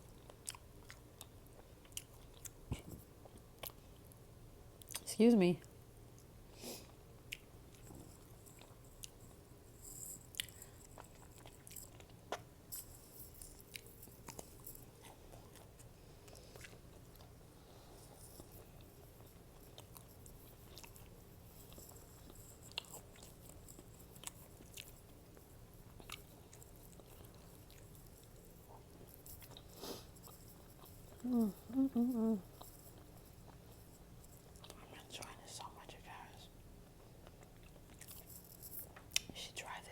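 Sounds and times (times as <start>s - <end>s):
chewing food: 0.0s - 4.2s, 4.8s - 5.1s, 6.1s - 35.4s, 36.8s - 39.3s
faint steady hum: 0.0s - 39.9s.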